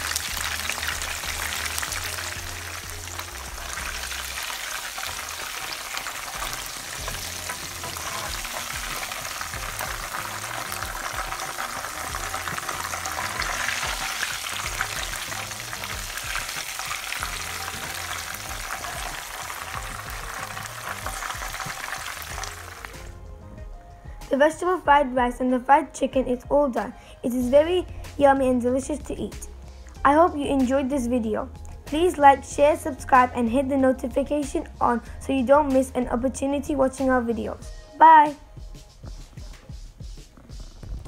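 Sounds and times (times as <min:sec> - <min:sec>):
chicken frying in hot oil: 0:00.0 - 0:23.1
stirring in a pan: 0:00.7 - 0:23.0.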